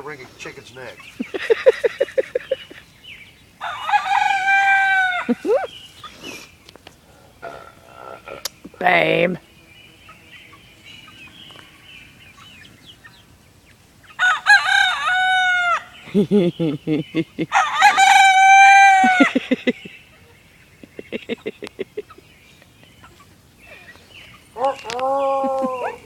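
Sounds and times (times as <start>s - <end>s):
rooster crowing: 3.6s - 5.5s, 14.2s - 15.9s, 17.5s - 19.4s.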